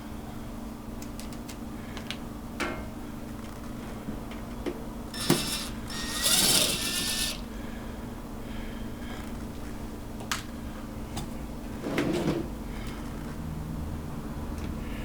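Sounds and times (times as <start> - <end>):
steady low hum: 5.0 - 9.2
rasping bursts: 5.1 - 7.5
parts clicking and knocking: 5.2 - 7.5.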